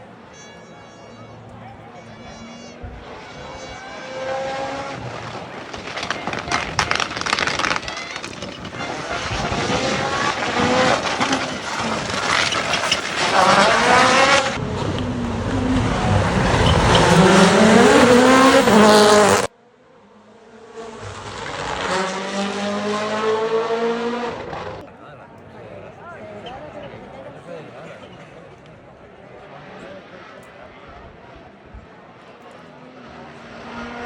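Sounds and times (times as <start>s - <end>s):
tyre noise: 0.9s - 19.5s
rally car engine revving: 2.5s - 19.5s, 20.5s - 24.8s, 32.8s - 34.0s.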